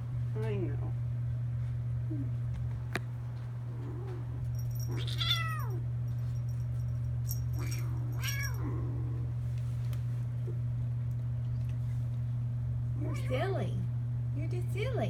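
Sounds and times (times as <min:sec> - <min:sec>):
kitten meowing: 0:04.9 - 0:05.8, 0:07.6 - 0:08.6.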